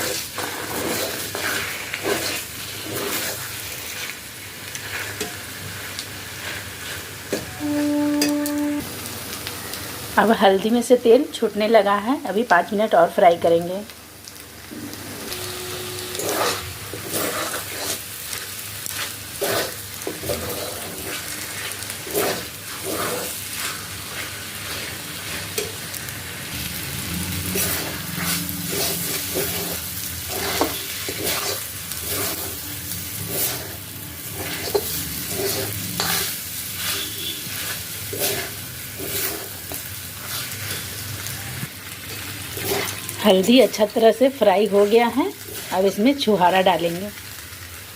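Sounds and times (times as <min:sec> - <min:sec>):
paste sizzling in oil: 0:00.0 - 0:11.4, 0:14.2 - 0:47.9.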